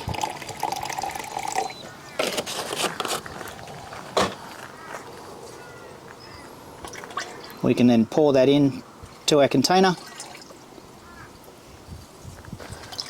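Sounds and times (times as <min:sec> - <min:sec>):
liquid pouring into container: 0:00.0 - 0:01.8, 0:09.9 - 0:10.6
handling knocks and clunks: 0:02.2 - 0:04.7.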